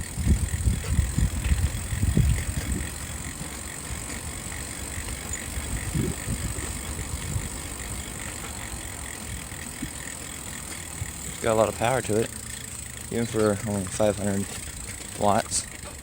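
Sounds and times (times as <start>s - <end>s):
wind buffeting microphone: 0.0s - 12.0s
bike tyre rumble: 0.0s - 16.0s.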